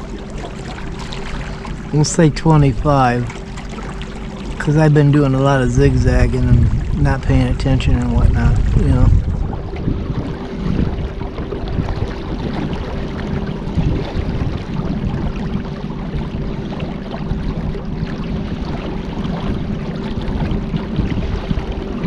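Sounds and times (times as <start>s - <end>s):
faint steady hum: 0.0s - 22.0s
water rushing: 0.0s - 22.0s
wind noise: 4.6s - 16.5s, 17.3s - 22.0s.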